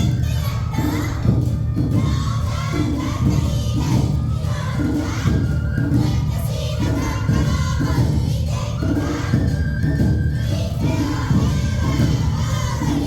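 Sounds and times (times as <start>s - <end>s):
drums beating: 0.0s - 13.0s
voices singing along: 0.0s - 13.0s.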